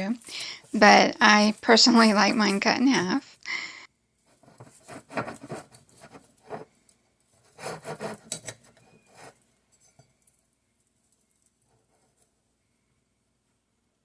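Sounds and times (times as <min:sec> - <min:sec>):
knife sawing through toasted bread: 0:07.4 - 0:09.4.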